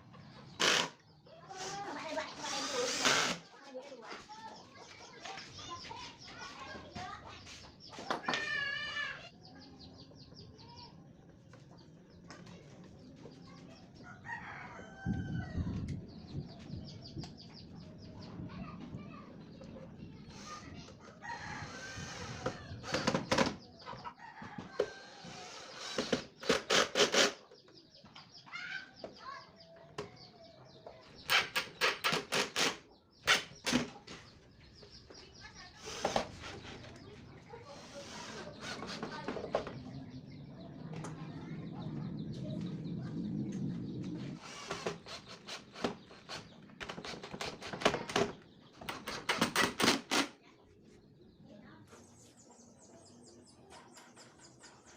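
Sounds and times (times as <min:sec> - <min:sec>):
chickens clucking: 0:03.4 - 0:08.5, 0:09.5 - 0:25.4, 0:32.8 - 0:44.4
rooster crowing: 0:14.2 - 0:15.8.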